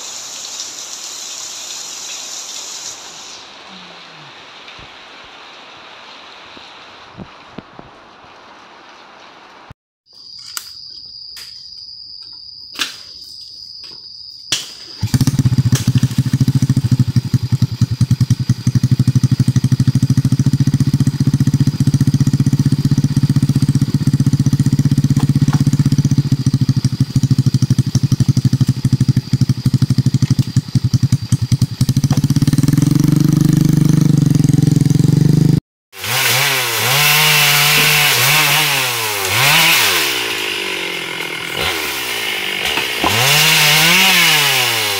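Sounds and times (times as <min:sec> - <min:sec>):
chainsaw cutting wood: 0:14.6 - 0:44.9
small engine running: 0:15.0 - 0:44.9.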